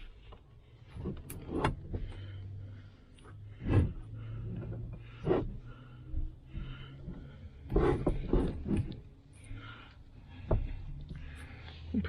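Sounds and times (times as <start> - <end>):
car seat thumping and scraping: 0.9 - 2.2, 3.4 - 9.1.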